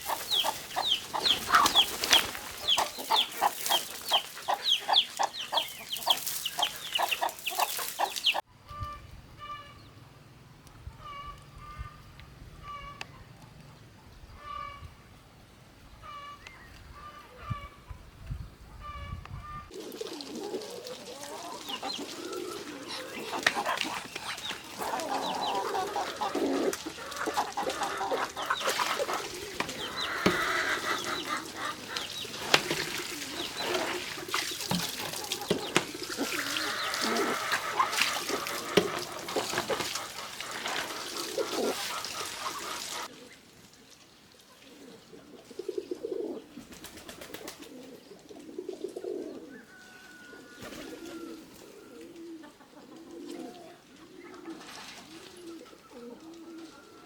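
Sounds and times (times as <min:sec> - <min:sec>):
chickens clucking: 0:00.0 - 0:09.7, 0:18.8 - 0:43.2, 0:50.5 - 0:57.0
pigeon cooing: 0:19.7 - 0:43.4, 0:44.6 - 0:57.0.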